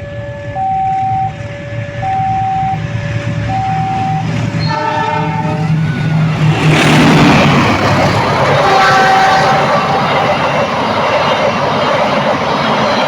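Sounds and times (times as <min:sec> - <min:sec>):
level-crossing two-tone alarm: 0:00.0 - 0:04.4
locomotive horn: 0:00.0 - 0:06.7, 0:08.4 - 0:10.3
train rushing past: 0:00.0 - 0:13.0.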